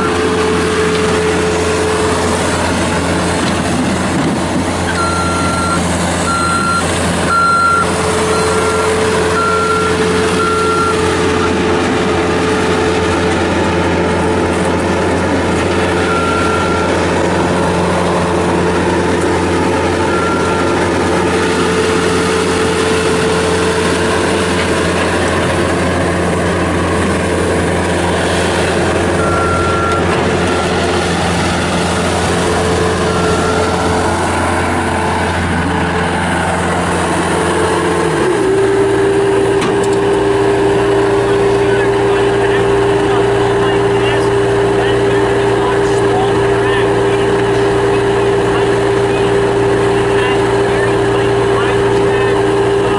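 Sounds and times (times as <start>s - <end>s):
diesel engine running: 0.0s - 52.9s
steady higher hum: 0.0s - 52.9s
backup alarm beeping: 4.9s - 11.6s, 15.6s - 17.8s, 19.5s - 20.8s, 29.2s - 31.0s, 31.8s - 34.2s.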